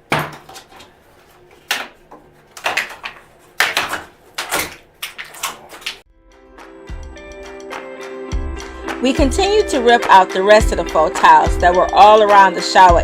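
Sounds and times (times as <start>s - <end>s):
wall panels ripping and cracking: 2.6s - 6.0s.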